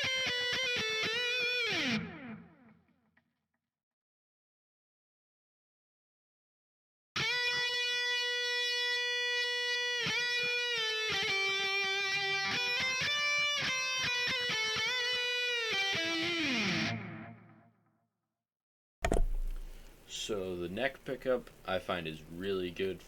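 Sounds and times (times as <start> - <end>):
distorted electric guitar lead: 0.0 - 3.0, 7.2 - 17.6.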